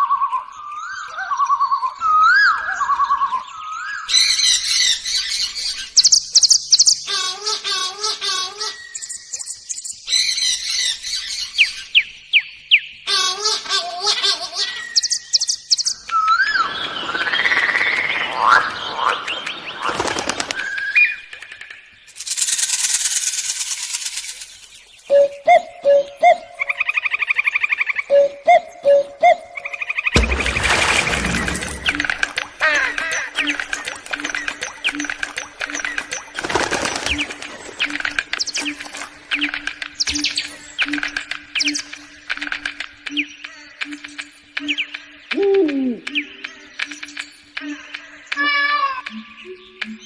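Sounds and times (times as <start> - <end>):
bird calls and whistles: 0.0 - 13.0, 14.6 - 50.0
whistled swooping tones: 16.1 - 18.4.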